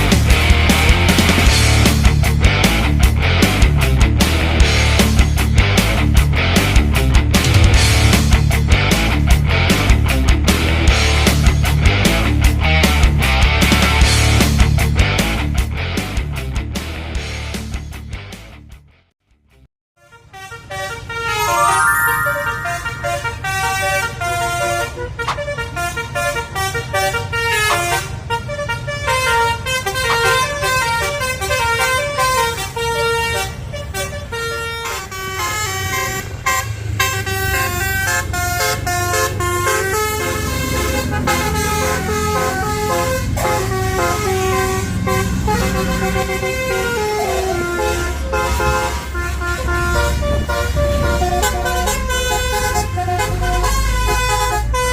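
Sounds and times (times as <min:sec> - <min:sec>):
bus engine running: 0:00.0 - 0:18.3, 0:23.4 - 0:54.9
multi-tone bus horn melody: 0:20.0 - 0:54.9.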